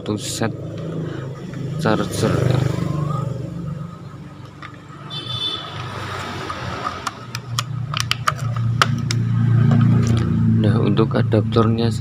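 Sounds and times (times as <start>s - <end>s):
charger and cable clicking: 5.7s - 10.3s.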